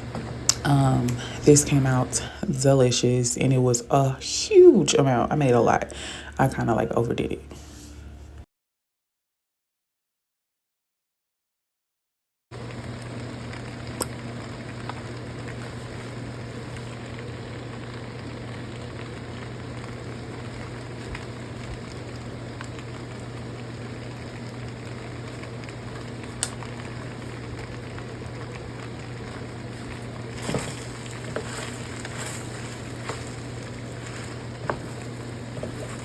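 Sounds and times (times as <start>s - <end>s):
low hum: 0.0s - 6.3s, 12.8s - 36.0s
food sizzling in a frying pan: 12.6s - 36.0s.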